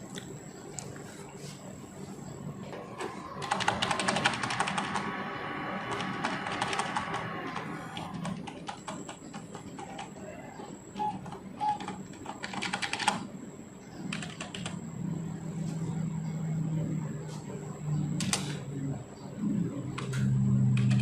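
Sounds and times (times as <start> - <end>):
computer keyboard keys pressed: 11.2 - 13.2, 14.1 - 14.8, 20.7 - 21.0.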